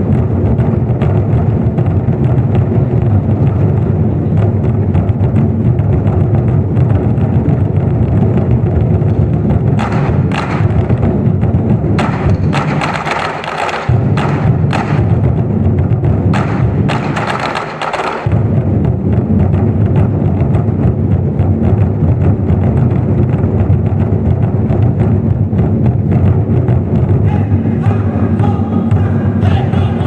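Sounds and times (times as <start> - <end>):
fast drum roll on large drums: 0.0 - 30.0
drumsticks clicking: 12.0 - 15.0.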